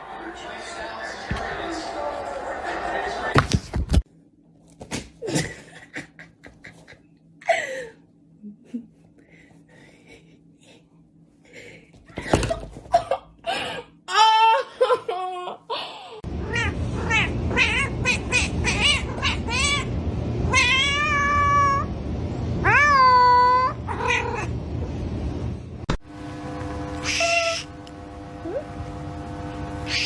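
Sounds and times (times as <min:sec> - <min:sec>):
cat meowing and yowling: 0:20.5 - 0:21.9, 0:22.6 - 0:24.5.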